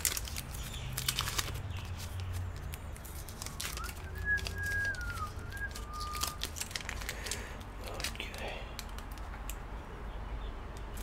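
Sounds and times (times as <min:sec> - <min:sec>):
person whistling: 0:03.5 - 0:06.4.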